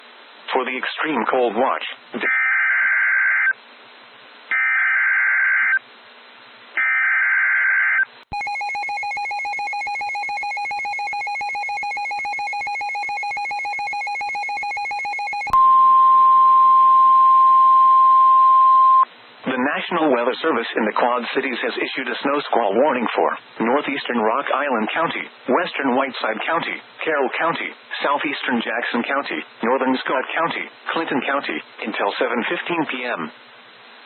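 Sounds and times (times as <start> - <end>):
rapidly pulsing alarm ring: 6.9 - 15.6
steady warning alert tone: 8.4 - 19.0.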